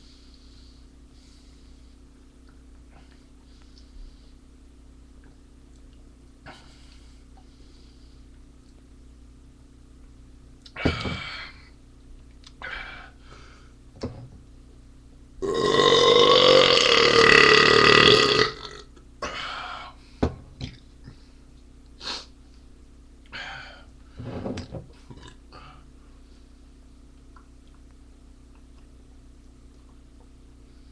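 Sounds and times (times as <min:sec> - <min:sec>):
man burping: 0:15.4 - 0:19.4, 0:25.1 - 0:25.4.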